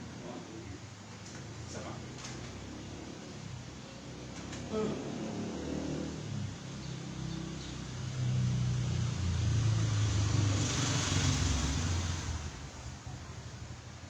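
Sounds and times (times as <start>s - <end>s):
vehicle engine passing by: 1.7s - 13.9s
rising hiss of passing vehicle: 2.6s - 13.9s.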